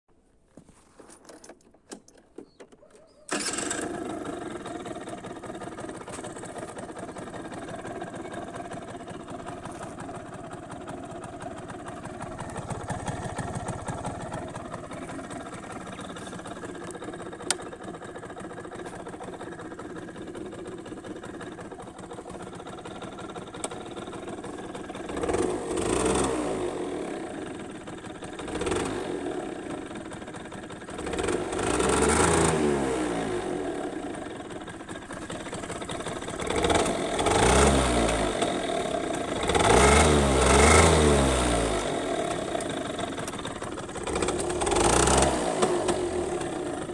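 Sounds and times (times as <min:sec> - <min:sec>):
scooter engine running: 0:02.5 - 0:46.9
engine revving: 0:25.0 - 0:27.6, 0:28.4 - 0:29.8, 0:30.9 - 0:34.2, 0:35.6 - 0:46.9.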